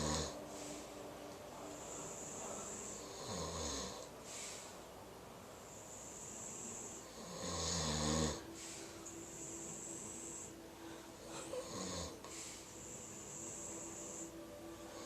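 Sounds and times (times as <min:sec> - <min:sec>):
dog snoring: 0:00.0 - 0:00.5, 0:01.7 - 0:04.6, 0:05.6 - 0:10.6, 0:11.6 - 0:15.0
faint steady tone: 0:00.0 - 0:15.0.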